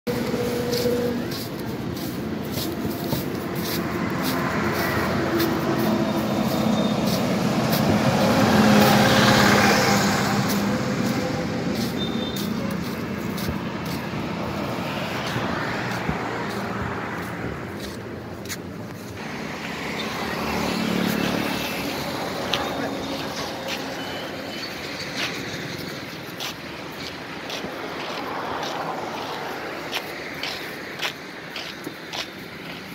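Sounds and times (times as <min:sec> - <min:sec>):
vehicle engine passing by: 0:00.1 - 0:18.4, 0:19.0 - 0:26.0.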